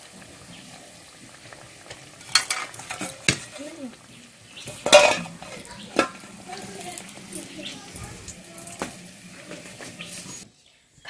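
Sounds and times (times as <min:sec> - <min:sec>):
pastries sizzling in hot oil: 0:00.0 - 0:10.5
metal utensil knocking a pan: 0:02.2 - 0:03.6, 0:04.7 - 0:06.3.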